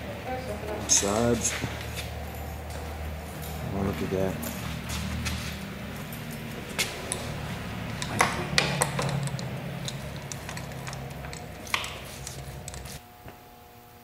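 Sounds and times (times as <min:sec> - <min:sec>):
low hum: 0:00.0 - 0:14.0
objects clinking and knocking: 0:04.4 - 0:13.0.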